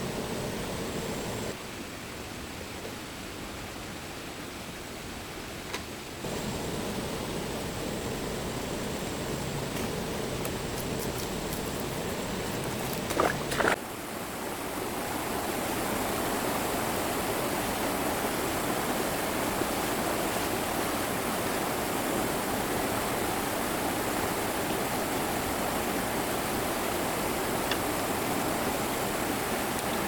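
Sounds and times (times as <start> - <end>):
flowing water rushing: 10.2 - 30.0.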